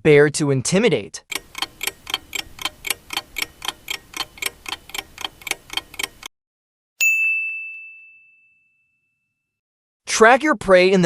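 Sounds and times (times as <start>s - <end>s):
clock ticking fast: 1.3s - 6.3s
bright ding: 7.0s - 9.4s.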